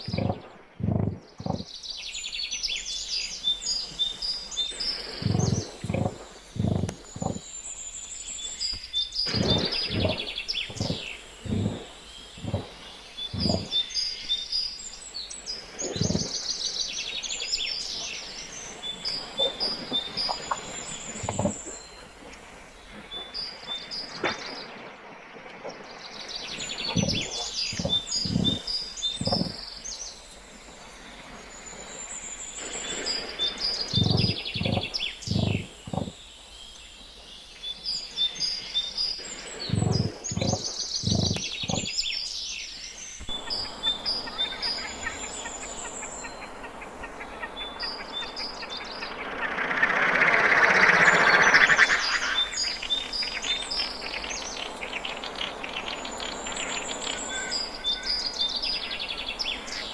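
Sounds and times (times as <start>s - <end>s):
creature low pulses: 0.0s - 1.7s, 4.9s - 7.4s, 9.3s - 13.8s, 26.9s - 29.6s, 33.9s - 36.2s, 39.3s - 41.9s
birds chirping and trilling: 0.0s - 59.9s.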